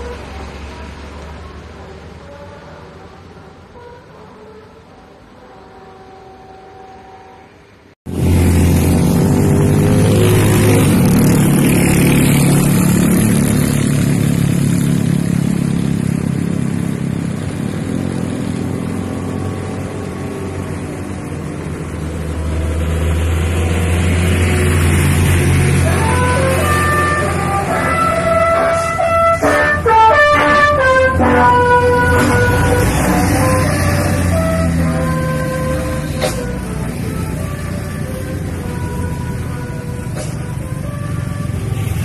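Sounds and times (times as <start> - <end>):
multi-tone musical horn: 0.0 - 7.7, 25.3 - 41.7
bus engine running: 0.0 - 42.0.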